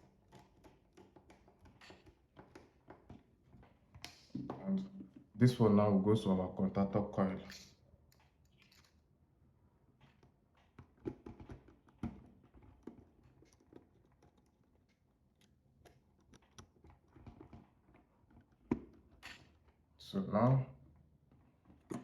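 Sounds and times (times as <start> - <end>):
wire clicking and tapping: 10.0 - 19.0.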